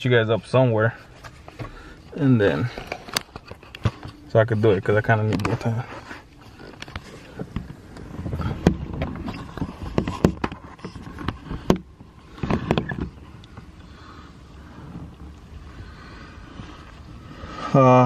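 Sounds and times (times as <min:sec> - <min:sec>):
phone handling clicks and rustles: 0:01.0 - 0:13.8.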